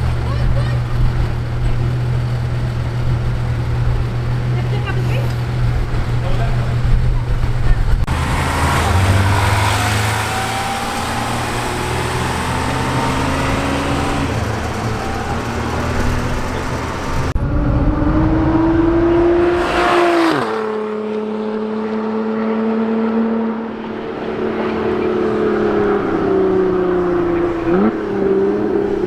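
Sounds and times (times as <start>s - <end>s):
sports car engine and exhaust: 0.0s - 29.0s
car accelerating past: 8.0s - 29.0s.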